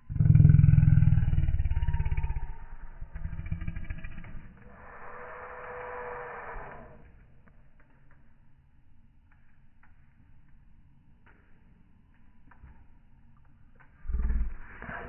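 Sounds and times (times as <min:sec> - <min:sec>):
lion roaring: 0:00.0 - 0:07.0
lion hissing breath: 0:04.6 - 0:07.0.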